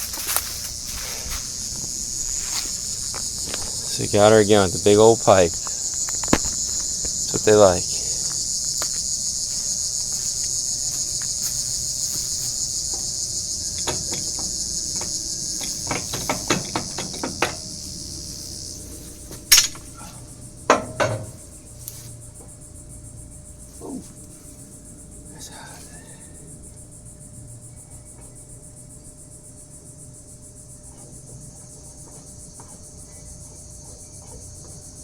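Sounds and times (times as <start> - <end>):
insects chirping: 0.0 - 35.0
light metal clinks: 12.9 - 18.0
sharp metal clanks: 12.9 - 18.0, 19.5 - 20.0, 20.7 - 21.5.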